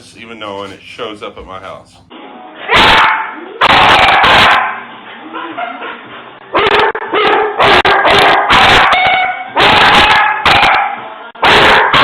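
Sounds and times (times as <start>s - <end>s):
dog barking: 2.7s - 4.8s, 5.4s - 6.0s, 6.6s - 12.0s.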